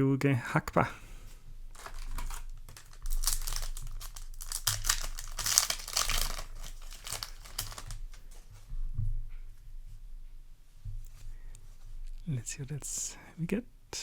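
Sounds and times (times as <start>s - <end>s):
foil wrapper crinkling and tearing: 1.7s - 8.4s.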